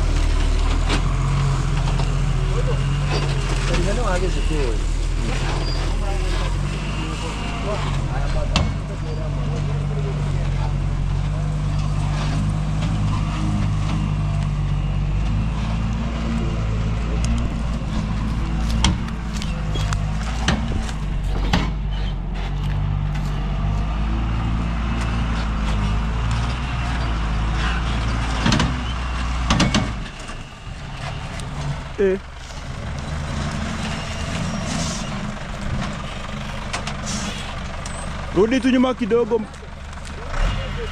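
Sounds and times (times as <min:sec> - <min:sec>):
vehicle engine running: 0:00.0 - 0:28.6, 0:30.5 - 0:40.9
sharp knocks or clicks: 0:18.2 - 0:21.9.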